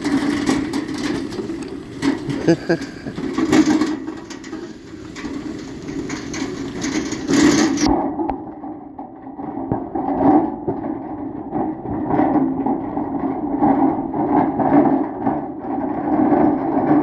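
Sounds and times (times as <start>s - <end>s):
small engine running: 0.0s - 7.9s.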